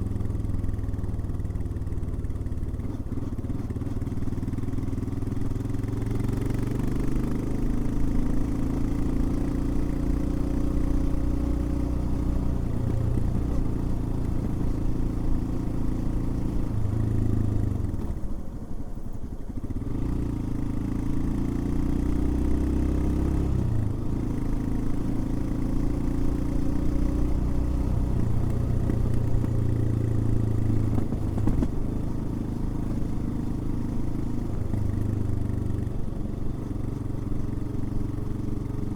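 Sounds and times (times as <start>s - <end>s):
motorcycle engine running: 19.3s - 38.9s.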